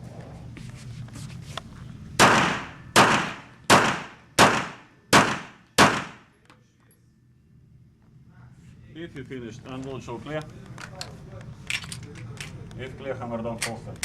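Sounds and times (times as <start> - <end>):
gunshot echo: 2.2 - 6.3
handgun shots: 2.2 - 6.3.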